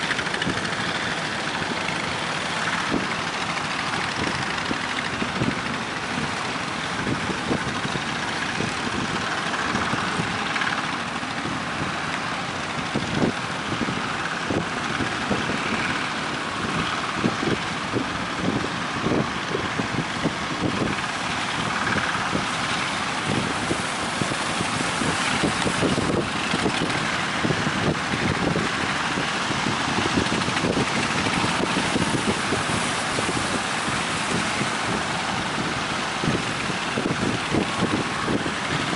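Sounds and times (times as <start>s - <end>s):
boat engine running: 0.0s - 38.9s
wind buffeting microphone: 0.0s - 38.9s.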